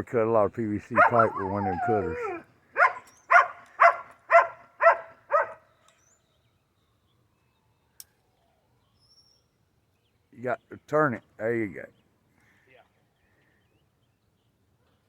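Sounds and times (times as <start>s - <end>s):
dog barking: 1.0s - 5.6s.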